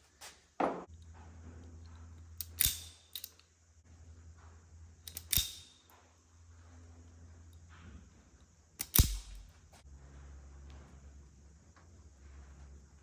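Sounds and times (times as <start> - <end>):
faint low hum: 0.8 - 13.0
hand tool snipping cord: 2.4 - 3.4, 5.1 - 5.9, 8.8 - 9.5.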